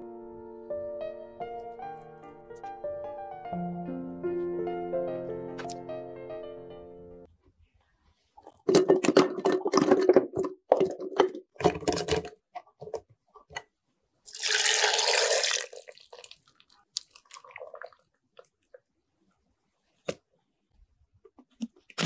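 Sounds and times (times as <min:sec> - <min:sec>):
tap water running: 0:14.3 - 0:16.4.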